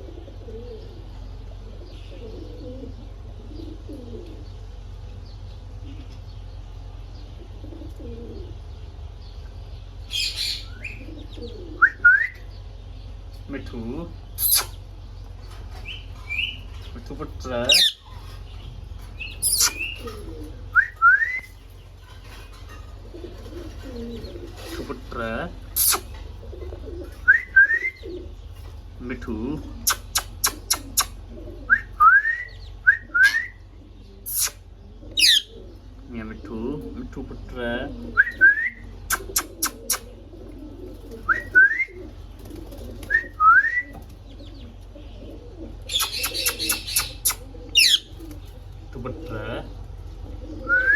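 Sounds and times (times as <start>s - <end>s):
parrot screeching: 10.1s - 11.0s, 14.4s - 14.7s, 17.7s - 18.0s, 19.4s - 20.0s, 35.2s - 35.5s, 45.9s - 48.1s
parrot rising whistles: 19.4s - 20.0s, 31.7s - 33.6s, 43.1s - 43.9s, 45.9s - 48.0s, 50.6s - 50.9s.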